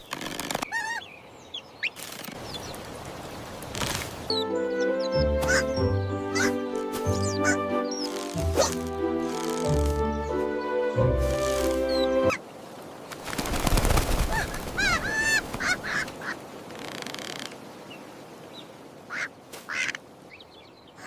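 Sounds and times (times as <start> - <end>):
music: 4.3 - 12.3.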